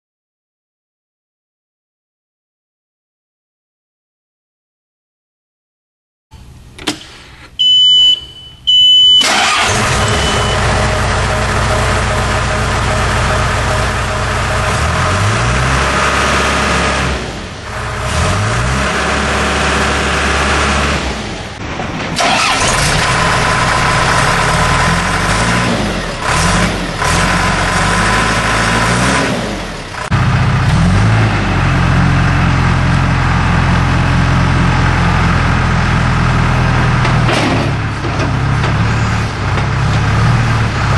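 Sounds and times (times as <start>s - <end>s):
short beeps: 7.6s - 9.3s, 9.9s - 10.7s
diesel engine starting and revving: 8.7s - 40.9s.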